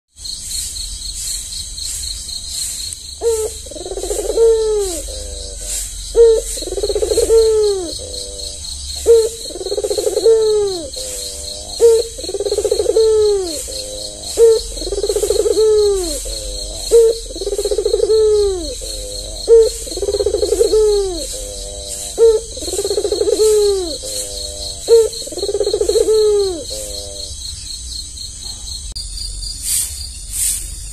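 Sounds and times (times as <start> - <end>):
insects chirring: 0.1 - 30.9
dove cooing: 3.2 - 27.4.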